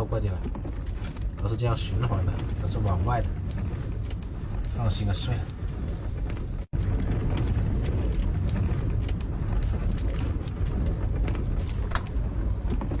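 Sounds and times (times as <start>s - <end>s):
strong wind buffeting microphone: 0.0s - 13.0s.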